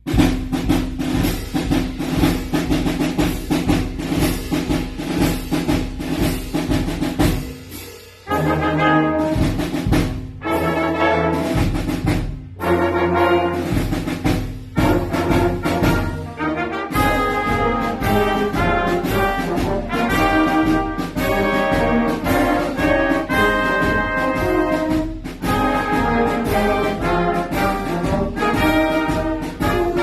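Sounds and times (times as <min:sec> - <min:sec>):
rapid drumming: 0:00.0 - 0:30.0
brass chords: 0:07.0 - 0:30.0.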